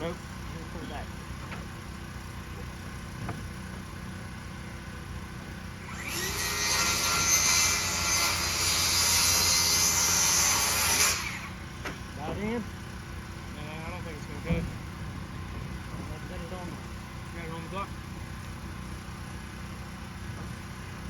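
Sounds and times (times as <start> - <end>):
power tool running hard: 5.3 - 14.2
low engine hum: 11.6 - 21.0.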